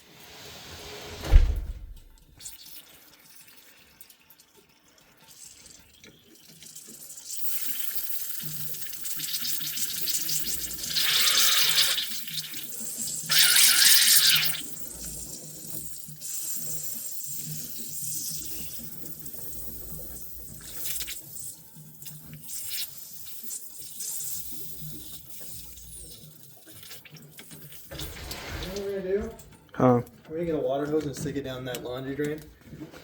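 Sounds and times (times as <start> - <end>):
water gushing from pipe: 5.0 - 29.2.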